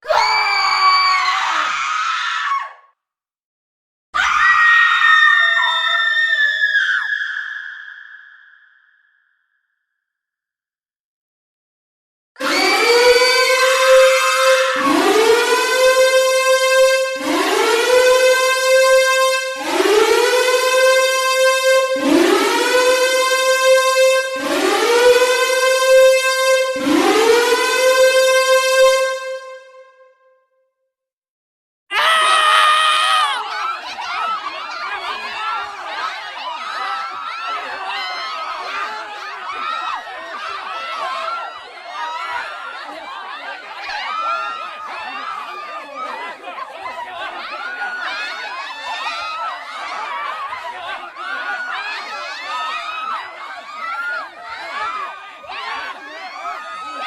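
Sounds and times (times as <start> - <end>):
loud screams: 0.0 - 2.9, 4.2 - 9.2, 12.4 - 15.8, 31.9 - 57.0
siren winding up: 12.4 - 21.2.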